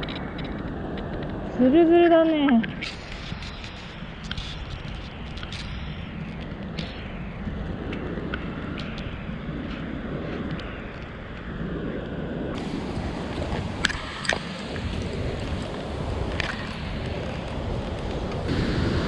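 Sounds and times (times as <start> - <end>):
stream water rushing: 12.6 - 19.0.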